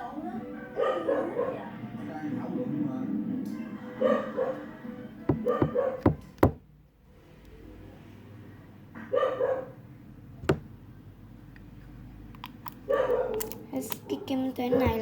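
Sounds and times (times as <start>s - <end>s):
dog barking: 0.6s - 1.7s, 4.0s - 4.7s, 5.4s - 6.2s, 9.0s - 9.8s, 12.9s - 14.3s
sharp knocks: 5.3s - 6.6s, 10.4s - 10.7s.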